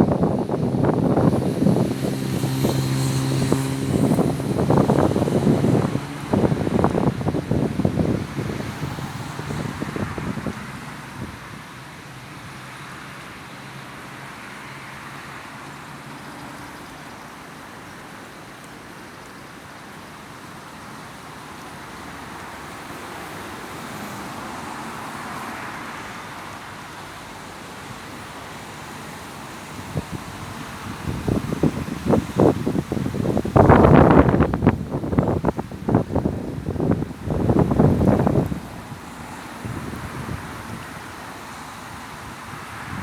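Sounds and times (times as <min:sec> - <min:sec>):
wind buffeting microphone: 0:00.0 - 0:11.7, 0:28.4 - 0:43.0.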